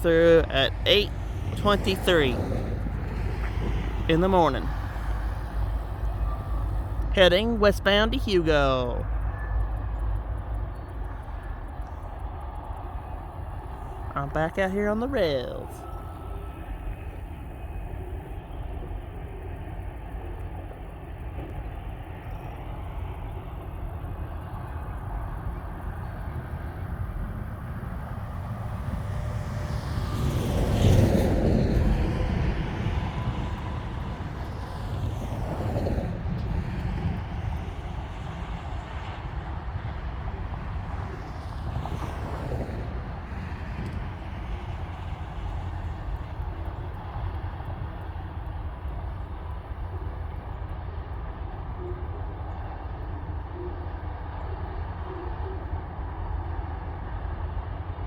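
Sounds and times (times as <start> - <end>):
motor vehicle passing: 0.0 - 14.6, 25.0 - 49.4
low outdoor rumble: 0.0 - 58.0.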